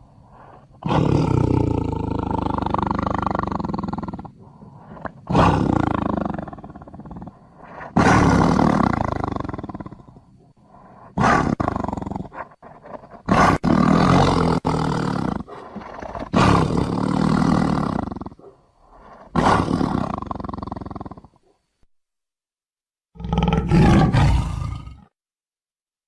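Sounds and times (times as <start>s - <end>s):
big cat roaring: 0.0s - 21.4s, 23.2s - 25.1s.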